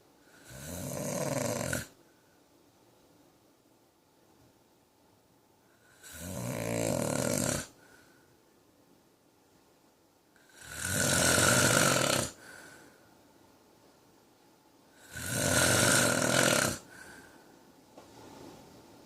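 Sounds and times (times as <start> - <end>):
man snoring: 0.3 - 2.0, 5.8 - 7.8, 10.4 - 12.5, 15.0 - 17.0.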